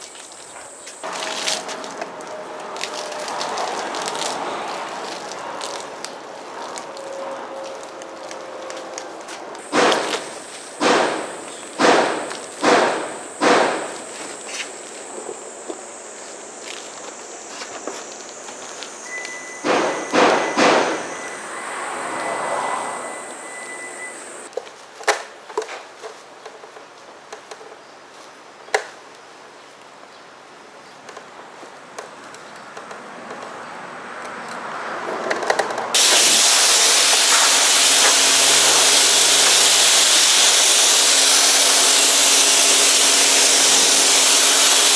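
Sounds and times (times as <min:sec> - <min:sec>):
pressure washer spraying water: 0:00.0 - 0:07.0, 0:09.2 - 0:24.5, 0:36.0 - 0:44.9
sharp knocks: 0:09.6 - 0:14.4, 0:19.6 - 0:22.0.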